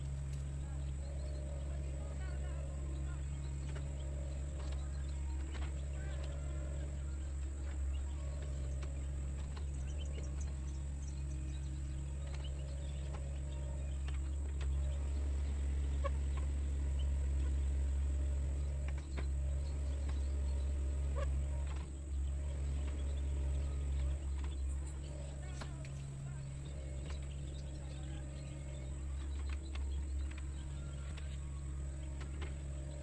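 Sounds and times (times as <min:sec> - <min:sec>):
chirp-like calls: 0:00.0 - 0:33.0
diesel engine droning: 0:00.0 - 0:33.0.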